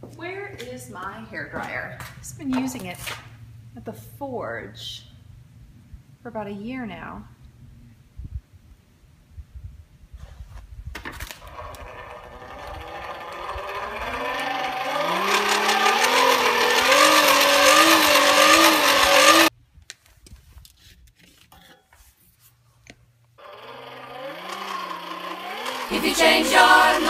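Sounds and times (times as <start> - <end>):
hair dryer blowing air: 14.2 - 19.5, 23.7 - 27.0.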